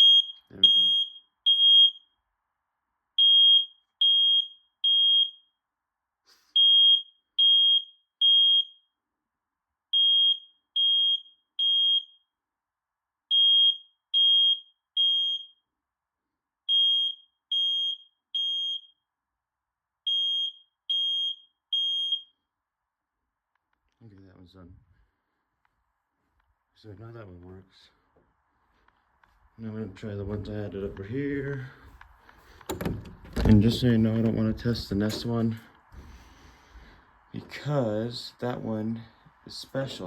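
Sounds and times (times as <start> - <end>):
smoke alarm beeping: 0.0 - 2.2, 3.2 - 5.5, 6.6 - 8.9, 10.0 - 12.3, 13.3 - 15.6, 16.7 - 19.0, 20.1 - 22.4.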